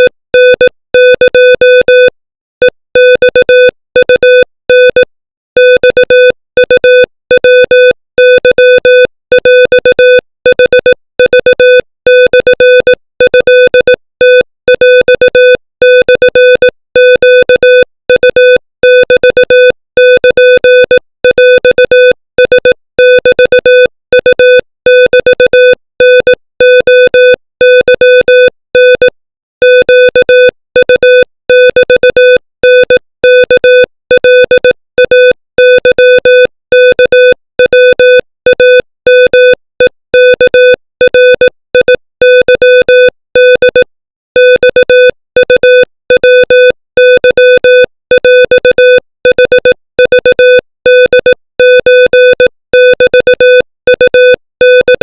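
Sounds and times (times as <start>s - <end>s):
morse code beeps: 0.0s - 55.0s.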